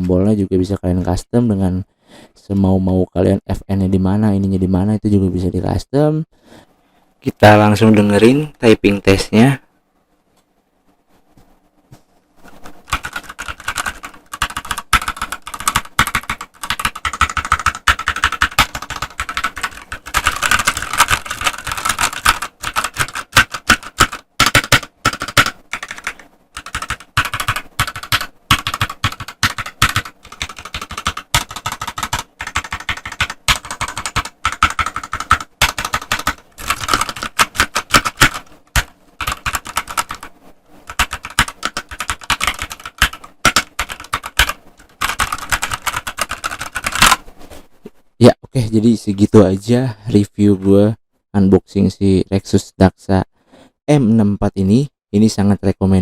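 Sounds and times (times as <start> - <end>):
mechanical keyboard typing: 12.8 - 40.3, 40.9 - 47.2.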